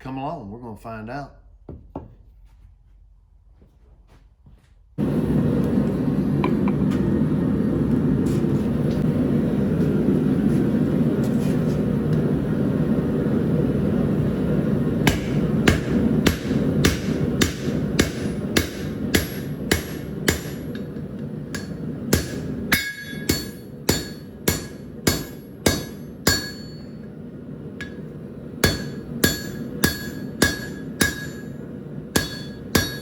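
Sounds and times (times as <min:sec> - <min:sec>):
hammer striking steel: 0:15.0 - 0:27.0, 0:27.8 - 0:33.0.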